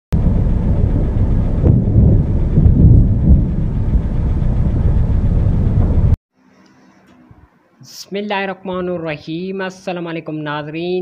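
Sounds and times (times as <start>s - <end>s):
loud rumbling thunder: 0.1s - 6.2s
wind noise: 0.1s - 6.2s.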